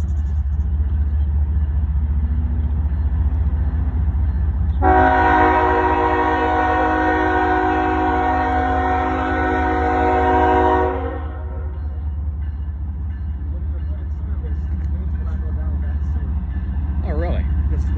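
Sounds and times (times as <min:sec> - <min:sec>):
diesel locomotive engine rumbling: 0:00.0 - 0:17.9
locomotive air horn blast: 0:04.8 - 0:11.7.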